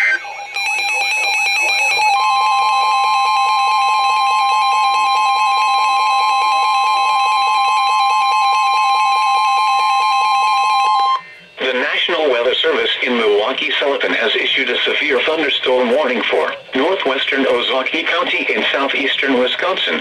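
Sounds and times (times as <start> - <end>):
two-tone electronic alarm: 0.0 - 11.4.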